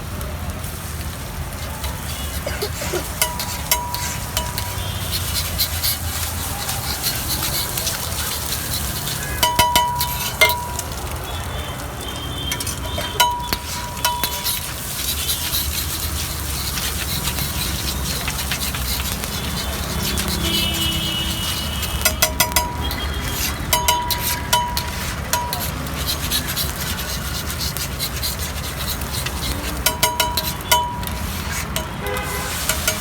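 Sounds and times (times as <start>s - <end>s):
eggs sizzling on a griddle: 0.0s - 33.0s
metal spatula clinking on pan: 2.4s - 11.0s, 12.5s - 33.0s.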